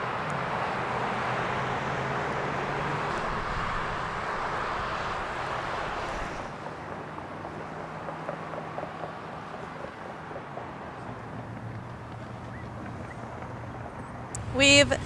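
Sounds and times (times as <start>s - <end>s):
motor hum: 11.6s - 15.0s.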